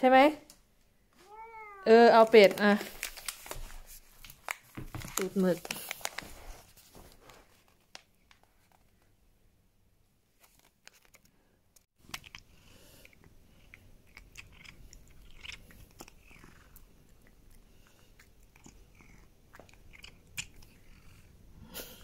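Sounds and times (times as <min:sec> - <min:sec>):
cat crunching a treat: 0:02.9 - 0:06.4, 0:10.5 - 0:11.3, 0:12.0 - 0:21.2.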